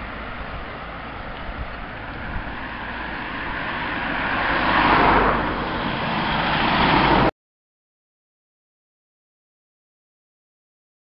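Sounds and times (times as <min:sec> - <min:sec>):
vehicle passing: 0:00.0 - 0:07.3.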